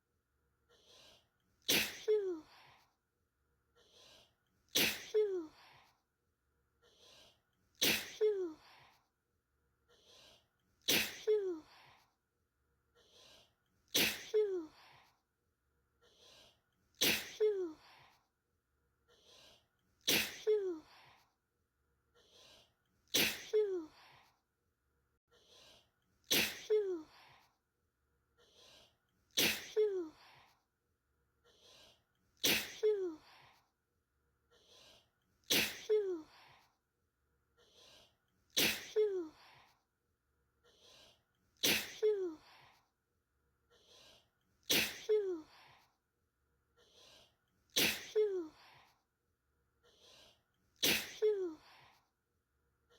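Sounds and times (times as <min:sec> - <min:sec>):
person sneezing: 0:01.6 - 0:02.8, 0:04.7 - 0:05.8, 0:07.8 - 0:08.8, 0:10.8 - 0:11.9, 0:13.9 - 0:15.0, 0:17.0 - 0:18.0, 0:20.0 - 0:21.1, 0:23.1 - 0:24.2, 0:26.2 - 0:27.4, 0:29.3 - 0:30.4, 0:32.4 - 0:33.4, 0:35.4 - 0:36.2, 0:38.5 - 0:39.6, 0:41.6 - 0:42.6, 0:44.6 - 0:45.7, 0:47.7 - 0:48.8, 0:50.8 - 0:51.5.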